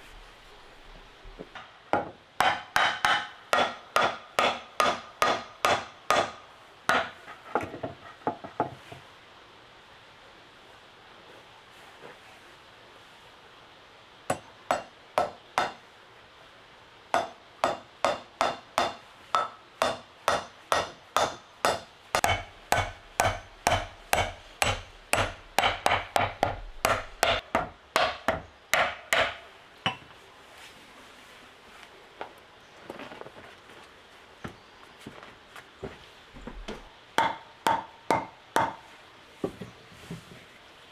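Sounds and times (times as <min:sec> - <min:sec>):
tool striking wood: 0:01.5 - 0:08.5, 0:14.3 - 0:15.8, 0:17.2 - 0:30.0, 0:36.6 - 0:38.8.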